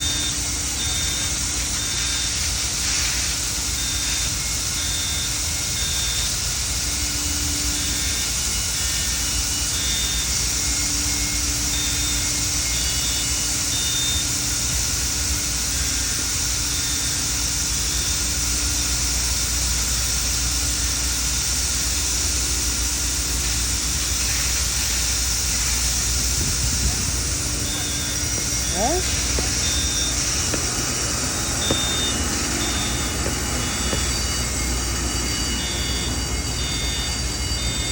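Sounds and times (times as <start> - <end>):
faint short beeps: 27.0 - 37.9.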